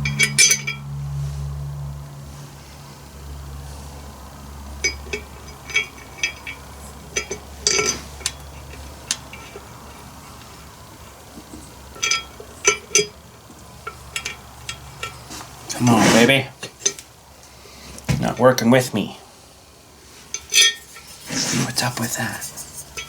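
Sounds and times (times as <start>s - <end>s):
hand tools clinking on steel: 0.0s - 0.9s, 4.8s - 17.1s, 20.2s - 23.0s.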